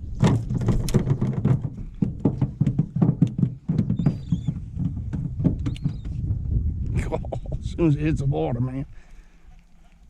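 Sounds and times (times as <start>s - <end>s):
rapid knocks and thumps: 0.0s - 6.7s
high bird chirp: 4.0s - 4.6s.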